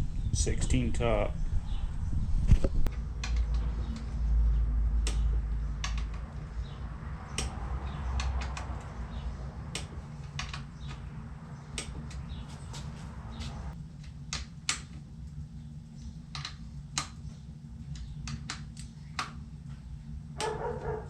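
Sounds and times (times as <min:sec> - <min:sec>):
low rumble: 0:00.0 - 0:14.0.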